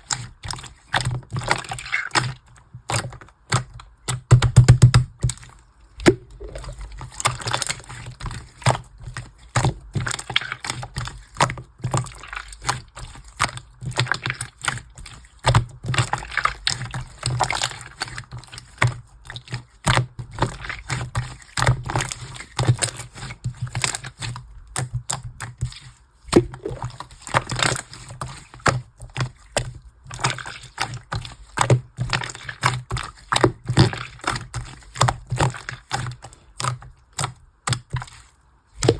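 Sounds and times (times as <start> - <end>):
slime clicking and popping: 6.0 - 6.7.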